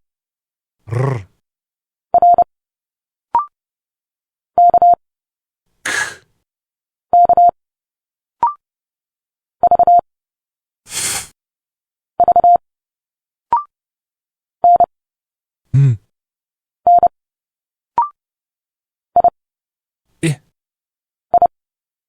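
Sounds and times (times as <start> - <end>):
spoken letter sounds: 0.9 - 1.3, 5.9 - 6.2, 10.9 - 11.3, 20.2 - 20.4.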